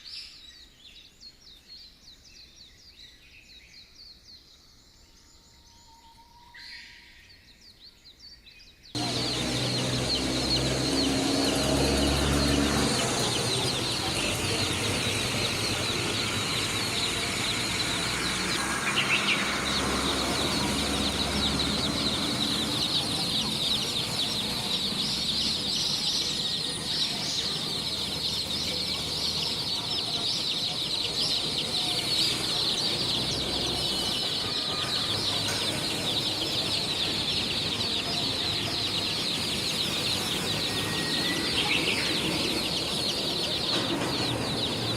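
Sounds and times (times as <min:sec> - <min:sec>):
chicks peeping: 0:09.0 - 0:44.9.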